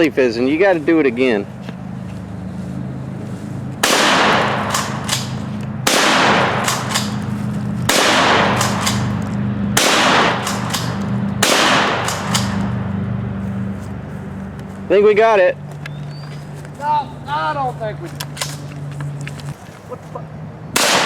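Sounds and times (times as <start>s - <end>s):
steady low hum: 0.0s - 21.0s
shotgun blasts: 3.8s - 7.3s, 7.9s - 9.2s, 9.8s - 12.8s, 20.8s - 21.0s.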